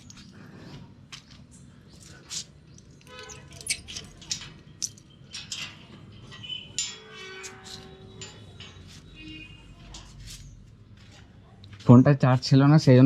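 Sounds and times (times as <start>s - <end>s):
scattered clicks and knocks: 2.7s - 9.3s.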